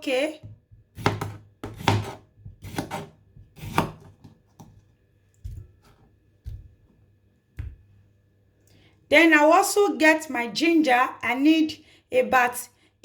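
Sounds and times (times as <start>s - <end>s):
knife cutting cucumber on board: 0.4s - 4.8s.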